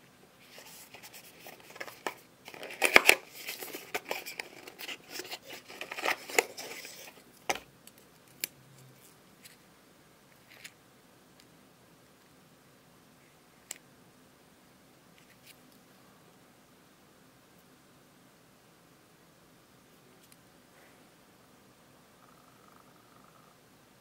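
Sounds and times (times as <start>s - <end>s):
packaging rustling and scraping: 0.4s - 7.7s.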